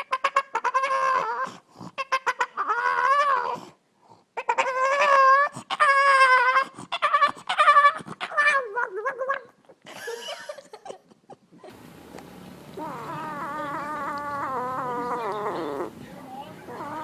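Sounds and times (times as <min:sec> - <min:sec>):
cat meowing: 0:12.8 - 0:15.9, 0:16.6 - 0:17.0.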